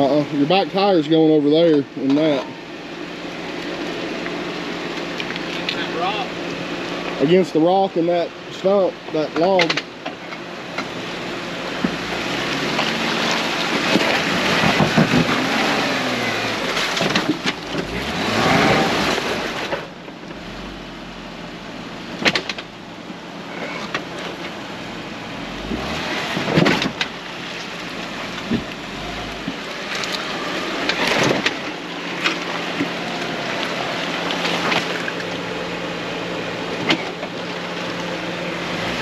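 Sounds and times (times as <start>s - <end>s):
engine revving: 10.8s - 21.2s, 25.4s - 39.0s.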